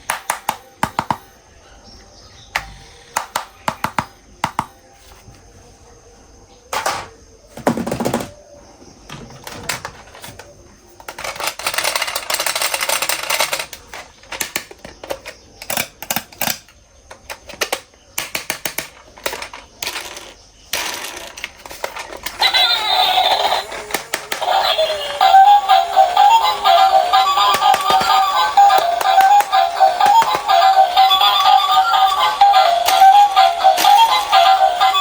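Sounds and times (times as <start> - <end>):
plastic toys clicking and knocking: 0.0 - 1.3, 2.5 - 4.8, 6.7 - 8.4, 9.1 - 35.0
music with synthetic sung voice: 22.4 - 35.0.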